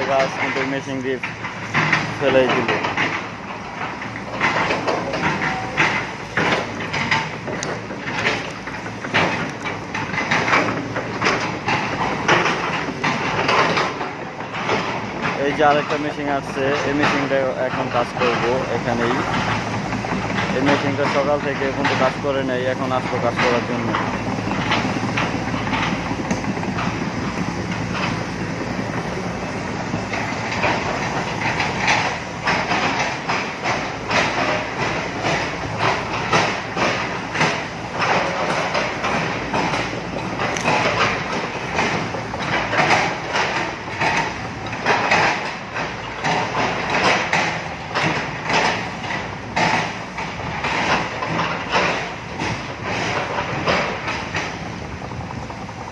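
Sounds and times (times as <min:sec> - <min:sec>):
excavator diesel engine rumbling: 0:00.0 - 0:55.9
machine rasping and clanking: 0:00.0 - 0:55.9.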